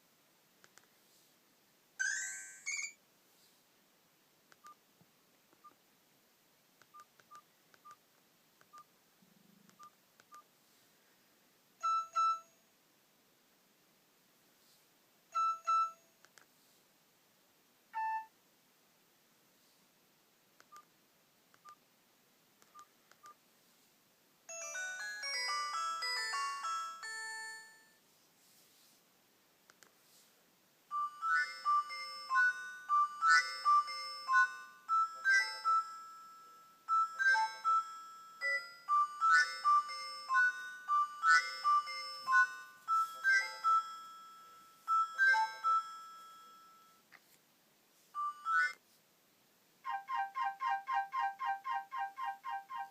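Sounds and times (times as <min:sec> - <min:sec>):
bright melody of high notes: 0:02.0 - 0:03.0, 0:24.5 - 0:27.9, 0:30.9 - 0:47.0
phone ringtone tune: 0:02.0 - 0:03.0, 0:11.8 - 0:12.6, 0:15.4 - 0:16.0, 0:24.5 - 0:28.0, 0:30.9 - 0:47.0, 0:48.2 - 0:48.8, 0:49.9 - 0:52.9
phone short beeps: 0:18.0 - 0:18.3.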